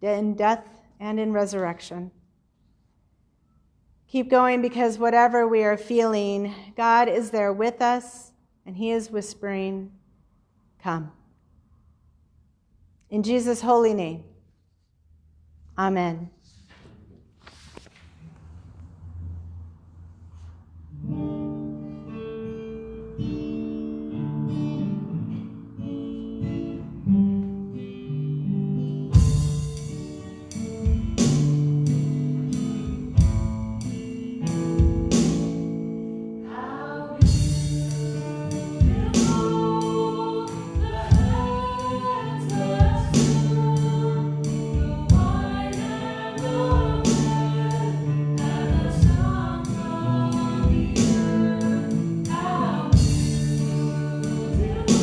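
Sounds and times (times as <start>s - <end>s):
acoustic guitar strumming: 20.9s - 55.0s
worship song: 36.4s - 55.0s
voices singing: 38.5s - 55.0s.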